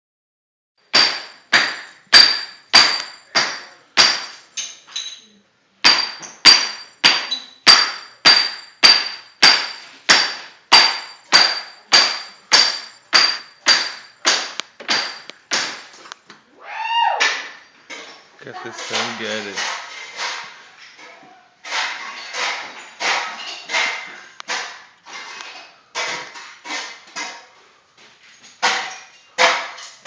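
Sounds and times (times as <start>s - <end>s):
hammer breaking floor tile: 0.9s - 5.2s, 5.8s - 16.0s, 21.6s - 27.4s, 28.5s - 30.0s.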